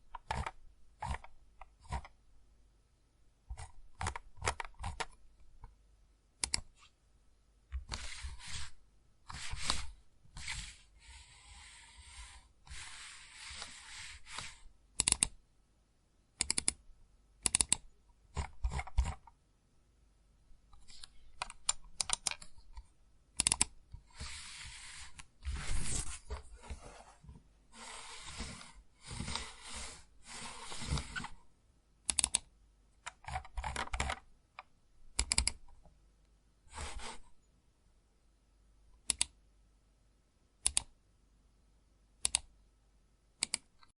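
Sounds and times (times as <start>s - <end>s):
computer mouse clicks: 0.1s - 2.2s, 3.5s - 5.2s, 6.4s - 6.8s, 13.5s - 15.4s, 16.4s - 16.8s, 17.4s - 19.4s, 20.8s - 24.4s, 32.1s - 35.8s, 39.0s - 39.4s, 40.6s - 40.9s, 42.2s - 42.5s, 43.4s - 43.9s.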